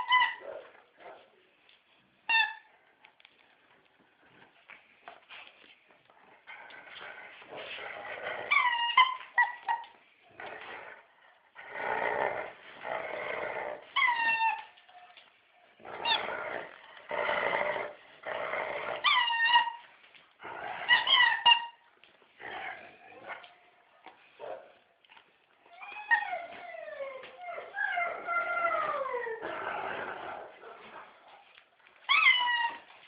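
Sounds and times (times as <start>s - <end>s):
dog growling: 6.3s - 9.0s, 10.3s - 14.0s, 15.8s - 19.5s, 22.4s - 23.5s, 27.9s - 31.2s.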